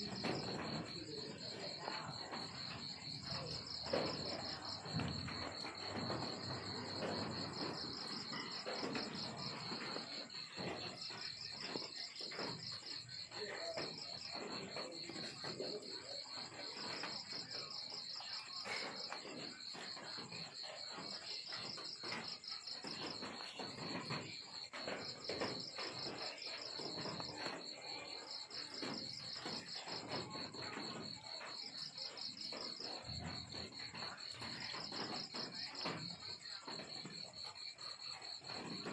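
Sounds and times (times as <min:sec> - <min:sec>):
crickets trilling: 0:00.0 - 0:38.9.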